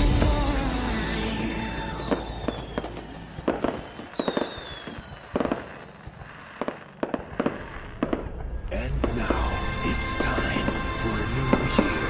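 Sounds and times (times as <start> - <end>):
firework whistles falling in pitch: 1.7 - 8.3
aerial firework shells banging: 2.1 - 9.5.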